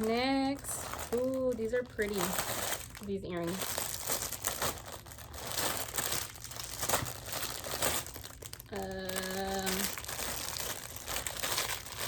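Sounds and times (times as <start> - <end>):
packaging crinkling: 0.0 - 12.0
person humming: 8.7 - 9.9.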